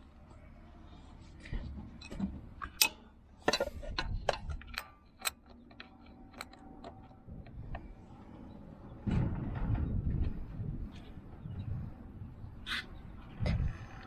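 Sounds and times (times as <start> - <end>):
tools clicking and clinking: 2.0 - 7.8.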